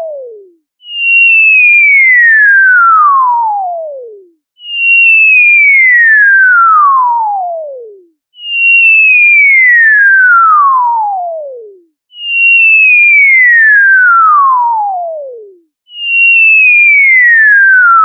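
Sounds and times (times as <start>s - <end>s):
cartoon falling whistle: 12.1s - 14.4s, 15.9s - 18.0s.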